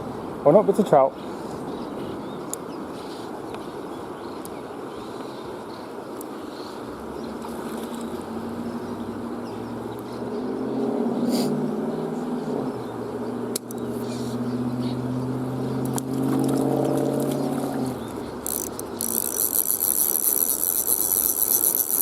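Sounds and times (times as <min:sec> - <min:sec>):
fast high-pitched reel clicking: 0:18.4 - 0:22.0
fishing reel ratchet buzzing: 0:18.4 - 0:22.0.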